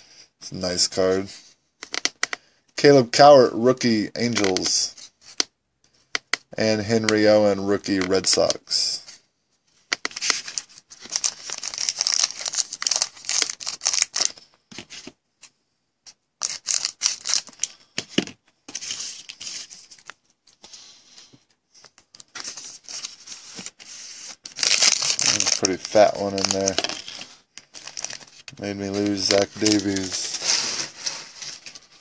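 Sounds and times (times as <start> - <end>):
plastic wrapper crinkling: 10.1 - 14.4, 16.4 - 17.8, 22.1 - 32.0.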